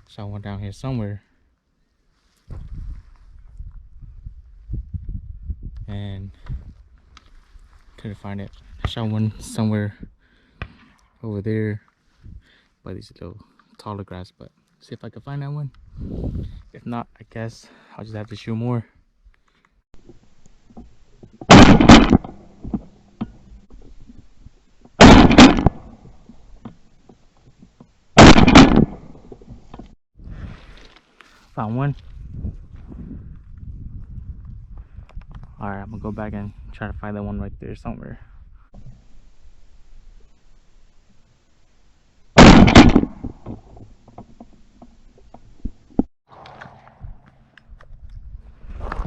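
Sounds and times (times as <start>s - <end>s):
shotgun blast: 21.5s - 22.3s, 25.0s - 25.9s, 28.2s - 29.2s, 42.4s - 43.2s.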